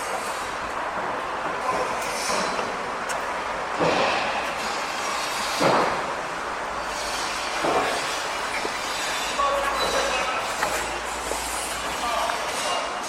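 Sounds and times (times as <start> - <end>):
metallic squeals and scraping: 6.8 - 12.8.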